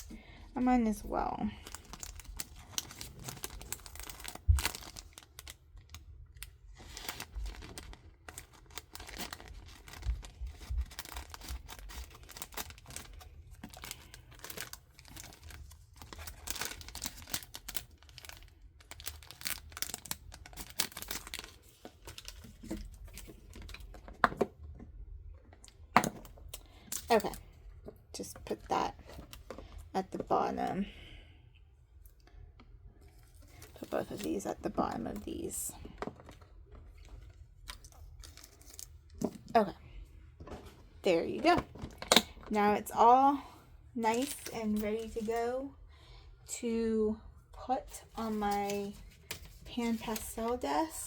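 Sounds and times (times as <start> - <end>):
packaging rustling and crinkling: 0.0 - 24.6, 28.4 - 29.8, 33.0 - 39.7, 44.1 - 45.7, 48.0 - 51.0.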